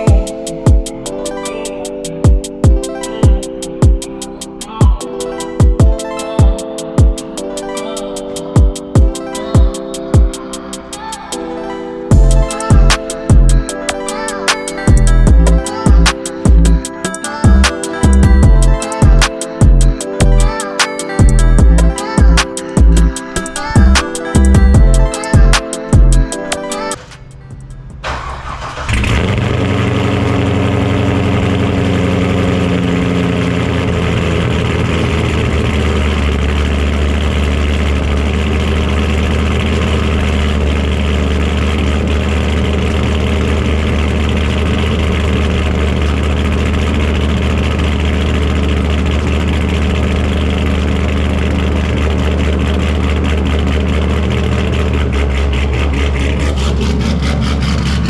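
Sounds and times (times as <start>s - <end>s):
car engine humming: 12.1s - 58.0s.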